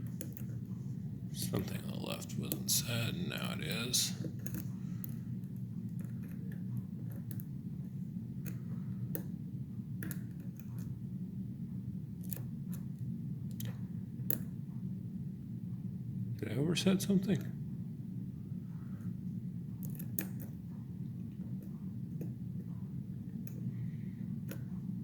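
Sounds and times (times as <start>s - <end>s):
low hum: 0.0s - 25.0s
lock picks clicking: 12.2s - 12.4s.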